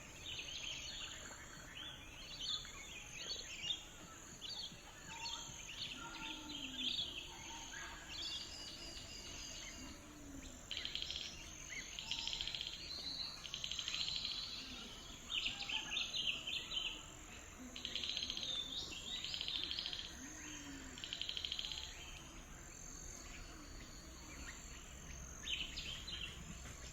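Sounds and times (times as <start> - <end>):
high drone of insects: 0.0 - 26.9
songbirds trilling: 0.0 - 26.9.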